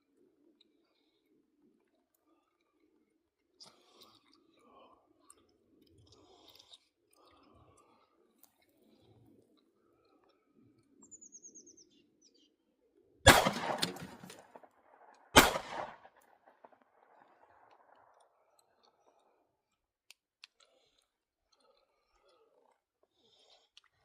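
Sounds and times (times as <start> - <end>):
bird chirping: 11.0 - 12.6
pistol shots: 13.3 - 14.6, 15.4 - 16.2.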